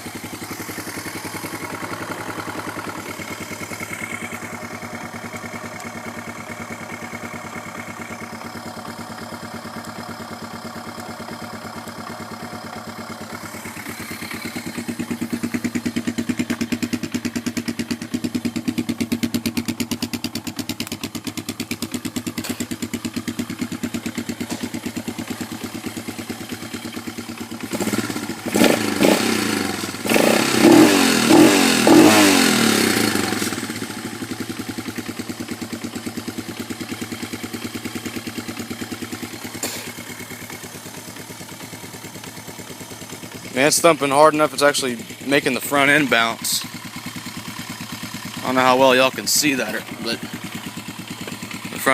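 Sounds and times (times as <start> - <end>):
single-cylinder engine thumping: 0.0 - 43.5, 45.9 - 51.9
engine revving blips: 27.7 - 33.6.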